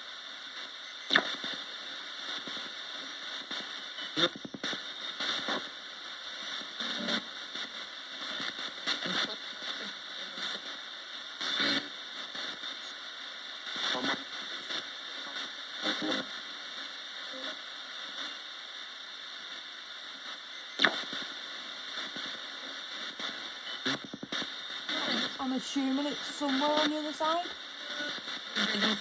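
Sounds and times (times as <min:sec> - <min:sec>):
radio static hiss: 0:00.0 - 0:29.0
static bursts: 0:00.0 - 0:29.0.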